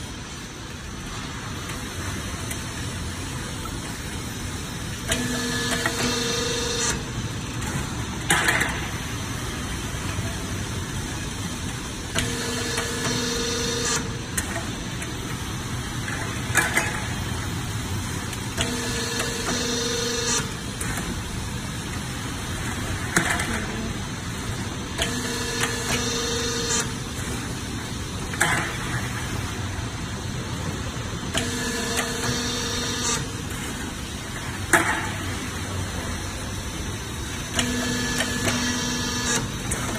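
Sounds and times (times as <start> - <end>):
machine hum: 0.0 - 39.9
pitched machine whir: 4.7 - 7.3, 12.0 - 14.5, 18.5 - 21.0, 24.8 - 27.2, 31.3 - 33.6, 37.5 - 39.9.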